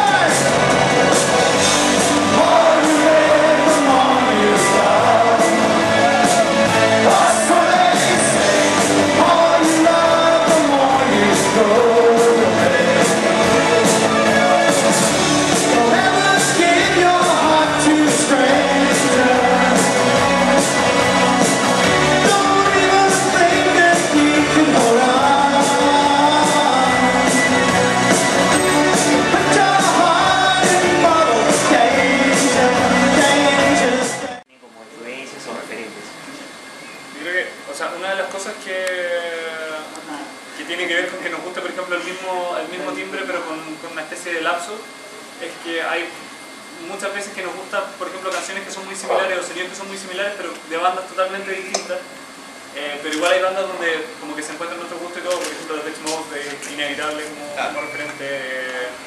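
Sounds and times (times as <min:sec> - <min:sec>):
steady drumbeat: 0:00.0 - 0:34.2
pop-rock song with singing: 0:00.0 - 0:34.5.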